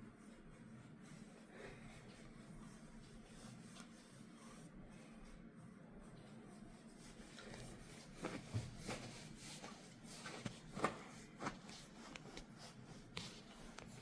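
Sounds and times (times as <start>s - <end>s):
hands rubbing skin and hair: 6.5s - 14.0s.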